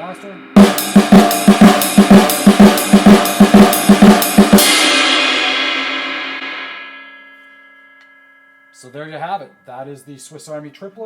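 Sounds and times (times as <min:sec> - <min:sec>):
cymbal ringing: 0:00.0 - 0:11.0
snare drum and ride cymbal: 0:00.6 - 0:06.5.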